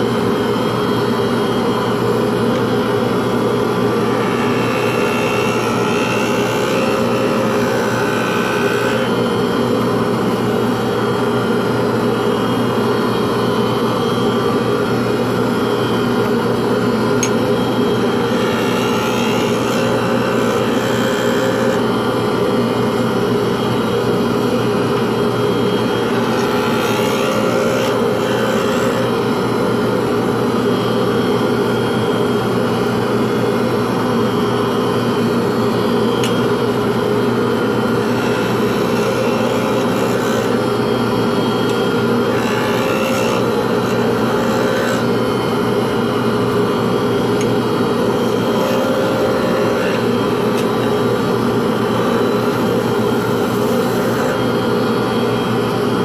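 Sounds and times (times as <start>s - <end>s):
power tool motor humming: 2.6s - 11.7s, 14.8s - 30.0s, 35.3s - 55.8s.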